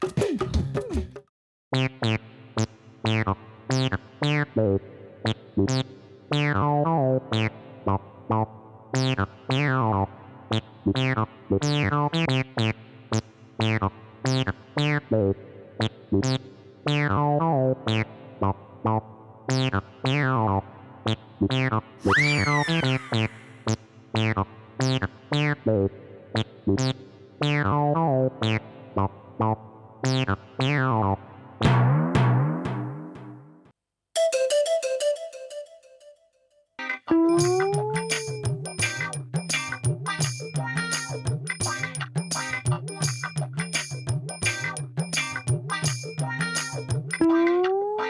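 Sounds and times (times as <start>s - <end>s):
comic synthesizer tune: 22.0s - 23.8s, 34.2s - 39.1s.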